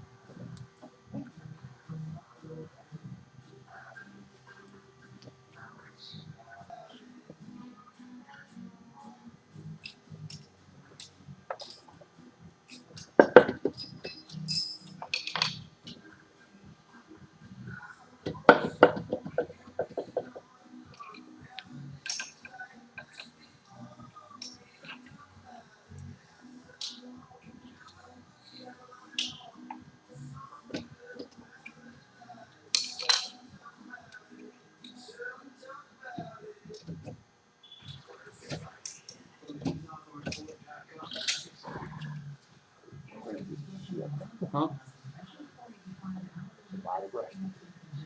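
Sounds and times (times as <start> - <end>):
tools and metal parts clinking: 9.8 - 12.0, 12.7 - 15.7, 22.0 - 23.3, 24.4 - 24.8, 32.8 - 33.4, 38.5 - 40.5, 41.1 - 41.6
metal tools clinking: 12.7 - 15.6, 22.0 - 22.5, 32.8 - 33.4, 41.1 - 41.6
ringing metal clink: 14.1 - 15.5.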